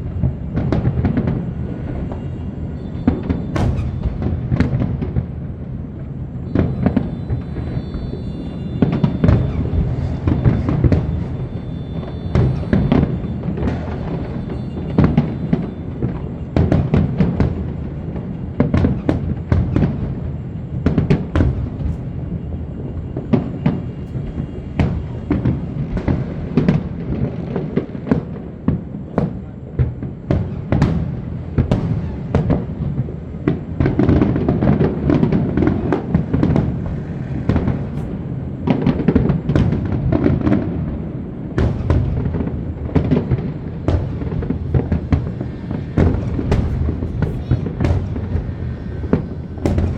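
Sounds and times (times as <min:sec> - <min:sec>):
fireworks bangs and crackles: 0:00.0 - 0:49.9
low rumble of bursts: 0:41.7 - 0:49.9.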